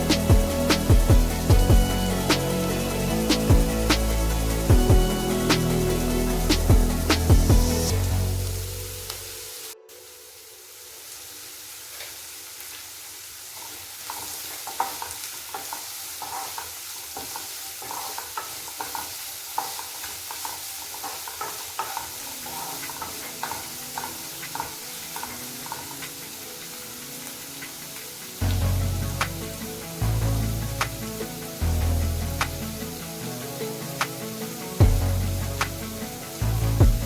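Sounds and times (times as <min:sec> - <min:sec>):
food sizzling in a pan: 0:00.0 - 0:37.0
spatula scraping a pan: 0:13.6 - 0:26.2.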